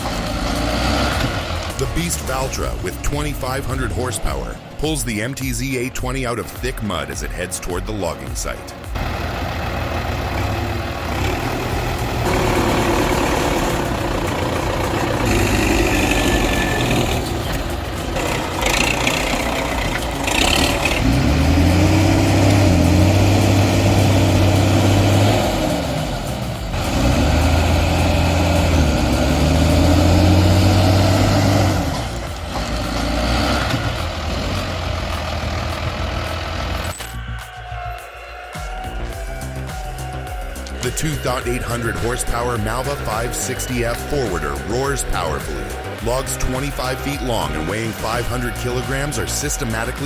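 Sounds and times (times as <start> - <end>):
tractor diesel engines under load: 0.0 - 37.3, 40.0 - 50.0.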